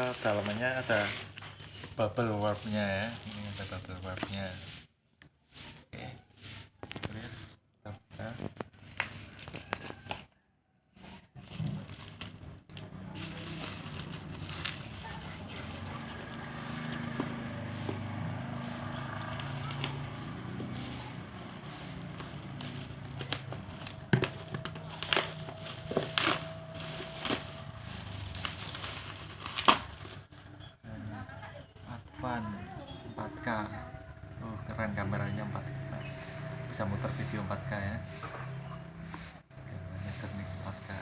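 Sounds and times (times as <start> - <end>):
wrapping crinkling: 0.0 - 4.6, 8.3 - 10.3, 11.1 - 30.4.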